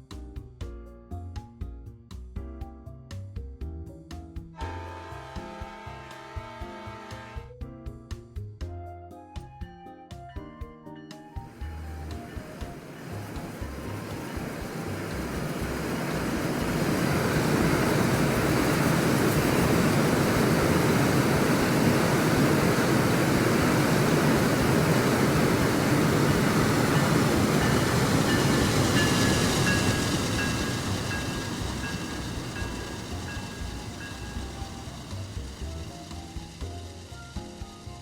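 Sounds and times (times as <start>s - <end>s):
train wheels rumbling on rails: 11.5s - 38.0s.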